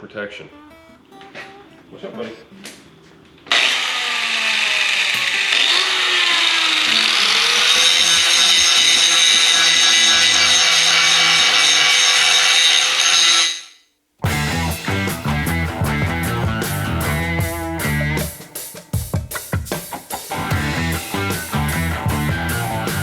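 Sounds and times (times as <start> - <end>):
power grinder grinding metal: 3.5 - 13.8.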